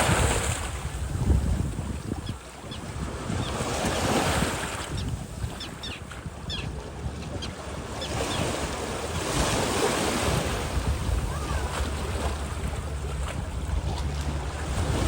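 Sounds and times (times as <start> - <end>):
surf washing onto beach: 0.0 - 2.2, 8.3 - 15.0
wind buffeting microphone: 0.0 - 15.0.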